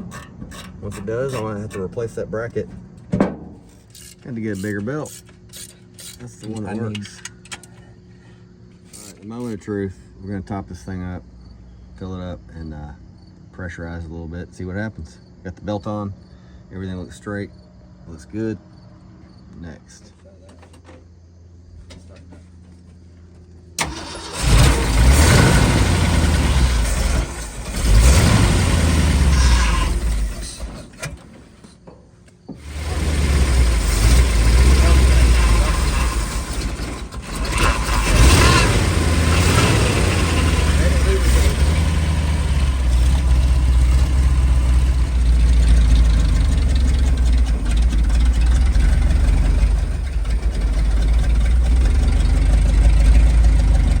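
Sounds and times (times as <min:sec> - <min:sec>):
pickup truck engine running: 0:23.8 - 0:31.0, 0:32.6 - 0:54.0.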